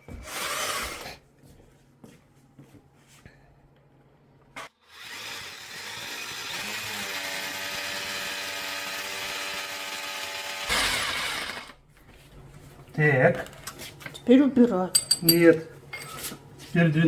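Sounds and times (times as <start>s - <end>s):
electric drill drilling: 0.2s - 1.1s, 4.8s - 11.8s.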